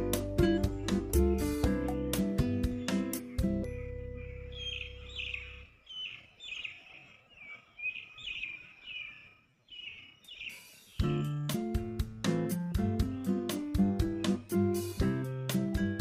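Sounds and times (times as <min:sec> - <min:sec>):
strummed guitar music: 0:00.0 - 0:04.2, 0:11.0 - 0:16.0
held music chord: 0:00.0 - 0:05.6
small bird chirping: 0:02.6 - 0:12.0.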